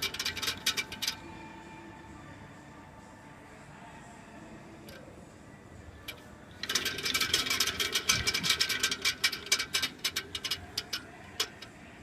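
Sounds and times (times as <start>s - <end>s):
rapid rattling clicking of shaft: 0.0s - 1.2s, 6.1s - 11.8s.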